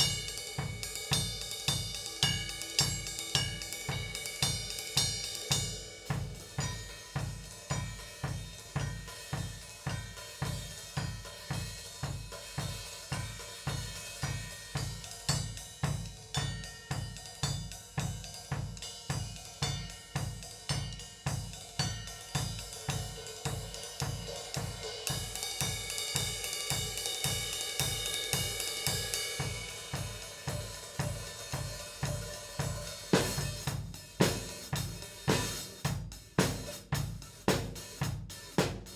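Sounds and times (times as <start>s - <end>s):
bass drum: 0.0s - 38.9s
hi-hat and cymbal wash: 0.0s - 38.9s
loud drum hit: 29.4s - 38.9s.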